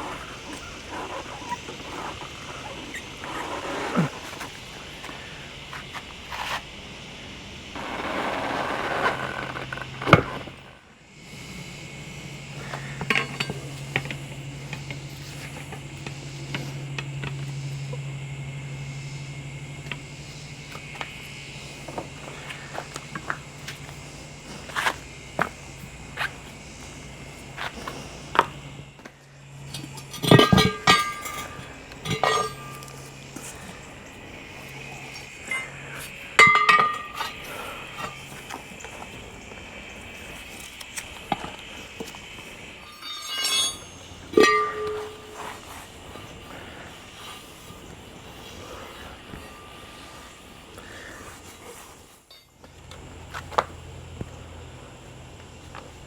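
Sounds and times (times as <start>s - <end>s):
low steady hum: 0.0s - 56.0s
metal tools clanking: 12.6s - 15.8s, 29.7s - 34.0s, 35.4s - 38.4s, 42.8s - 45.8s, 51.8s - 52.6s
sharp ringing metal clinks: 29.7s - 33.4s, 42.8s - 45.7s.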